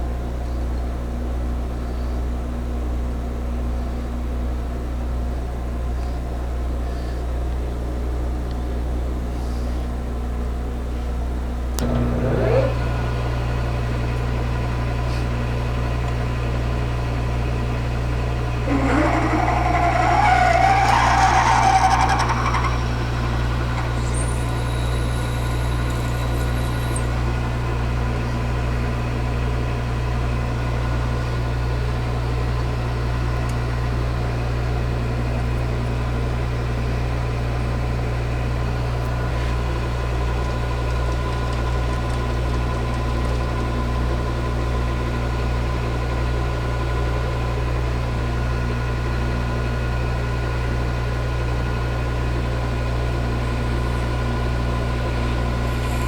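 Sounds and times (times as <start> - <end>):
machine tool humming: 11.8 - 13.9, 18.5 - 28.5, 55.0 - 56.0.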